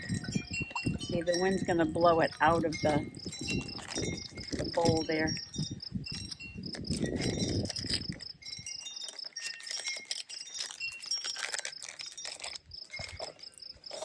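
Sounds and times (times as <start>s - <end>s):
wind buffeting microphone: 0.0s - 8.9s.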